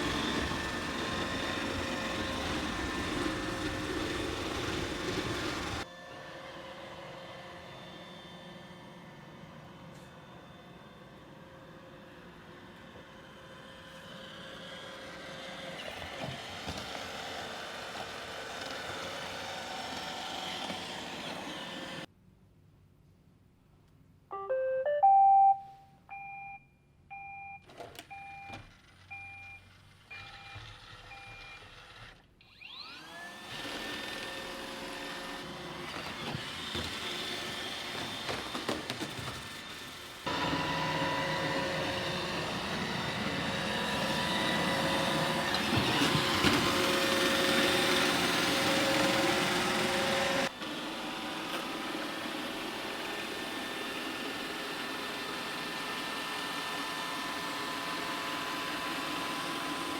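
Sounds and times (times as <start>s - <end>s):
robot vacuum whirring: 0.0s - 22.1s, 28.6s - 59.9s
rising start-up tune: 24.3s - 25.9s
evenly spaced beeps: 24.3s - 26.6s.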